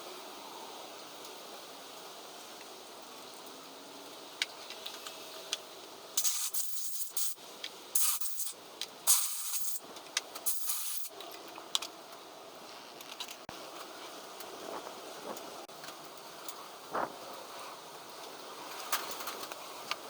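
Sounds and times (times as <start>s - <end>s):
steady background hiss: 0.0s - 20.0s
hissing spray from nozzle: 6.2s - 7.4s, 8.0s - 9.8s, 10.5s - 11.1s.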